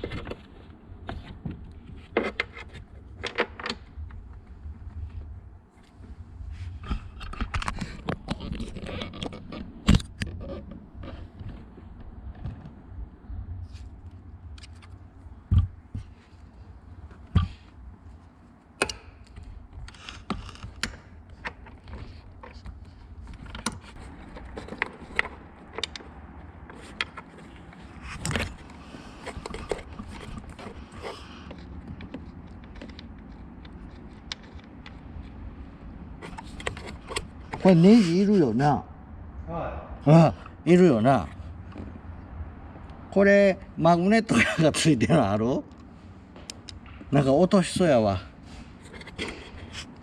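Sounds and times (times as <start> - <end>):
hand tools clicking and tapping: 18.8 - 35.1.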